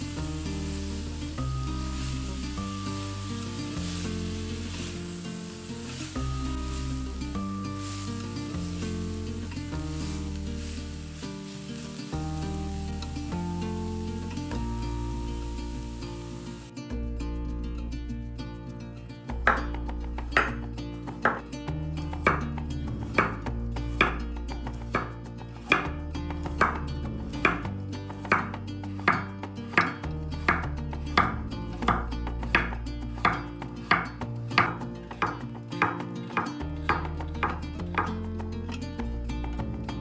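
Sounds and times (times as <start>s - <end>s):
soft background music: 0.0s - 40.0s
knife chopping on a cutting board: 28.3s - 30.6s.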